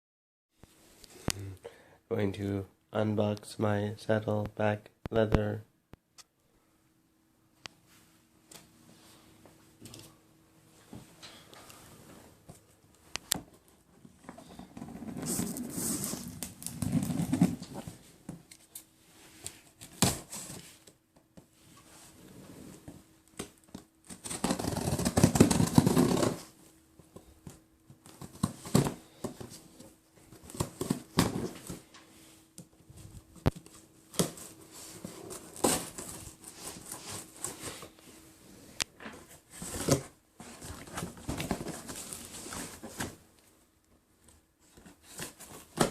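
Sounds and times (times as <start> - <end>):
packaging tearing: 24.1 - 26.5.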